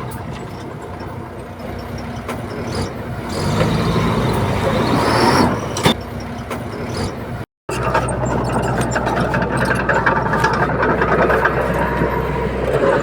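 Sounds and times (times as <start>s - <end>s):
diesel engine drone: 0.0s - 13.0s
metallic rattling and clanking: 5.5s - 13.0s.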